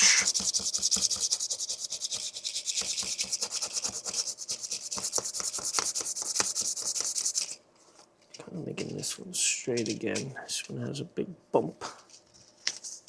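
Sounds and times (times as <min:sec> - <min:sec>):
sandpaper rubbing on plastic: 0:00.0 - 0:07.6.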